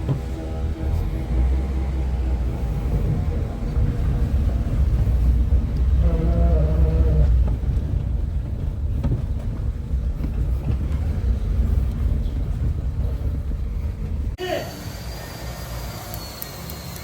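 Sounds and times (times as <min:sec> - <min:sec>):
pitched drone: 0:00.0 - 0:08.0
car engine low rumble: 0:00.0 - 0:14.4.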